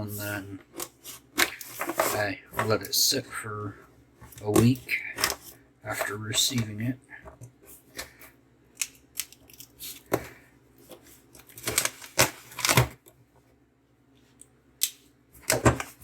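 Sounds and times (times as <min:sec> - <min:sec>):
packaging crinkling and tearing: 0:11.4 - 0:13.0.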